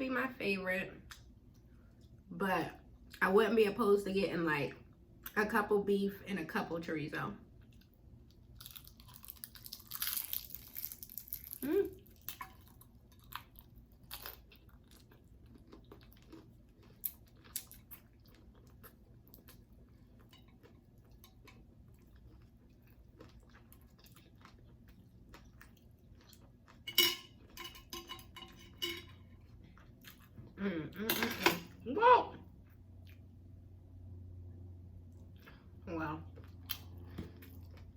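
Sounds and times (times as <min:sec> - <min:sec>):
chewing and crunching food: 0:07.4 - 0:30.6, 0:32.5 - 0:33.6, 0:35.0 - 0:37.9.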